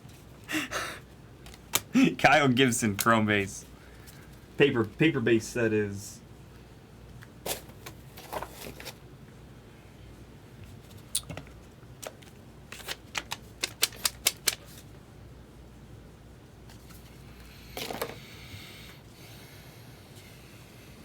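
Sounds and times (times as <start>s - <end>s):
cards snapped down clicking: 1.4s - 1.9s, 2.9s - 3.1s, 12.0s - 14.8s
cards rustling: 1.4s - 5.1s, 7.5s - 9.0s, 12.0s - 14.9s.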